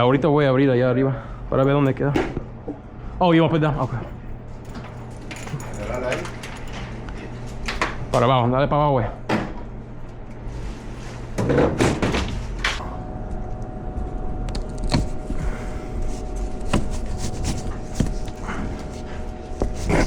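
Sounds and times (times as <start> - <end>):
objects clattering: 14.6 - 20.0.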